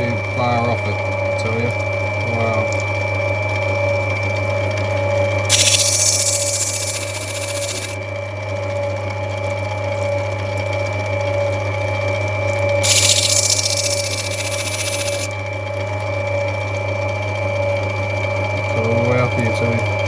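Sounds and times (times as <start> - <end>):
grinding machine motor hum: 5.5 - 8.0, 12.8 - 15.3
stone grinding on wheel: 5.5 - 8.0, 12.8 - 15.3.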